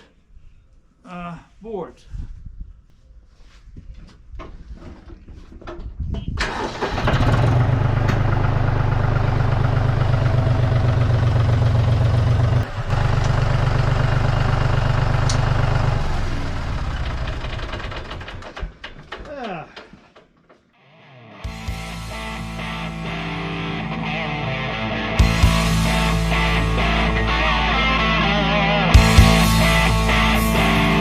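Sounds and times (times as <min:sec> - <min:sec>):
engine running with low pulsing: 0:07.0 - 0:18.6.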